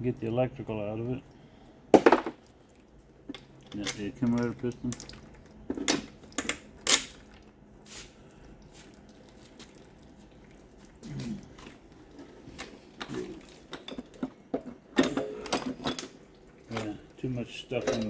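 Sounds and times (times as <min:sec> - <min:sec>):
metal parts clicking and clattering: 0:03.3 - 0:05.1
low voice-like sounds: 0:11.0 - 0:11.5.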